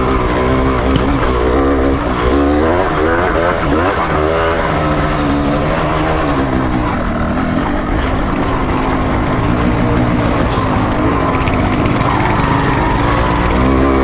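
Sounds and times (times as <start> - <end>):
motorcycle engine revving: 0.0 - 14.0.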